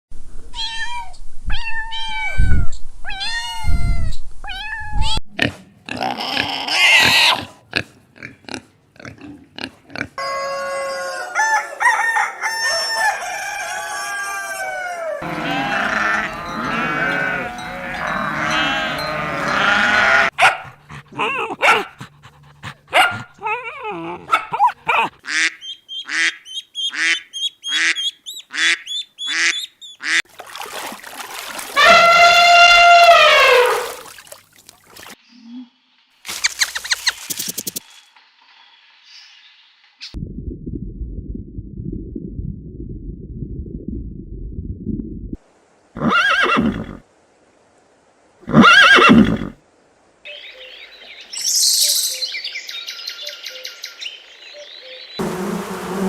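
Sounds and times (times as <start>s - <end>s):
farm animal calls: 14.5s - 20.6s.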